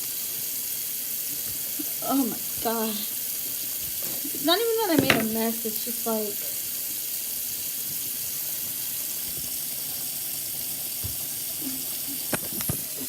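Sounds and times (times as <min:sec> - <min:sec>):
tap water running into sink: 0:00.0 - 0:13.0
light knocks: 0:05.0 - 0:05.4.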